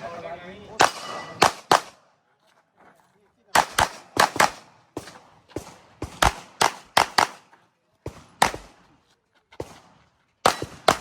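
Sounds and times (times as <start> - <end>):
handgun shots: 0.8 - 2.0, 3.6 - 5.2, 6.0 - 7.4, 10.4 - 11.0.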